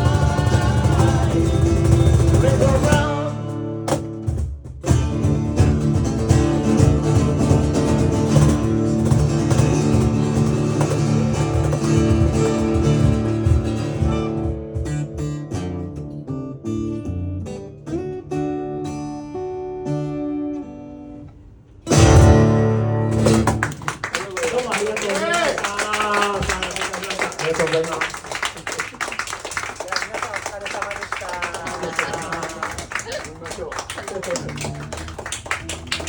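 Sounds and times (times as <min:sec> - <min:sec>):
acoustic guitar instrumental: 0:00.0 - 0:24.1.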